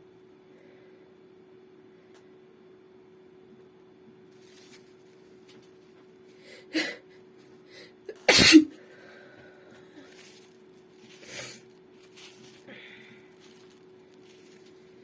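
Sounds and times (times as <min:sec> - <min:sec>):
faint steady hum: 0:00.0 - 0:15.0
woman sneezing loudly: 0:08.1 - 0:08.8.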